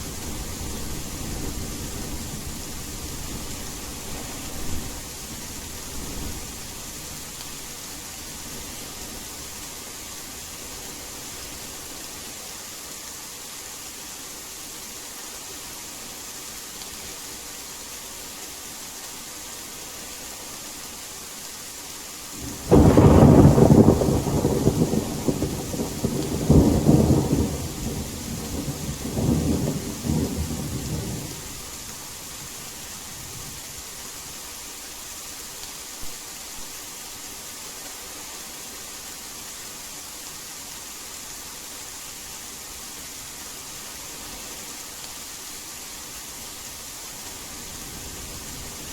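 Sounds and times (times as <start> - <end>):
rain hiss: 0.0 - 48.9
loud rumbling thunderclap: 22.4 - 31.4.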